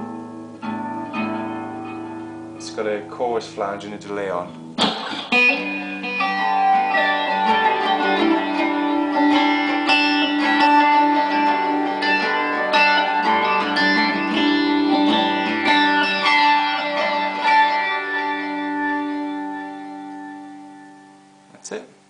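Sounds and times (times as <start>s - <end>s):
amplified acoustic guitar picked notes: 0.0s - 21.6s.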